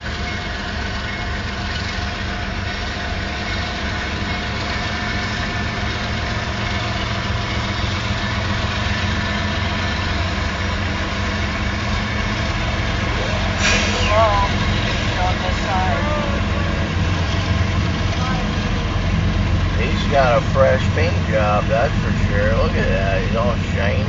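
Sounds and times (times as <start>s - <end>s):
diesel locomotive engine drone: 0.0s - 24.0s.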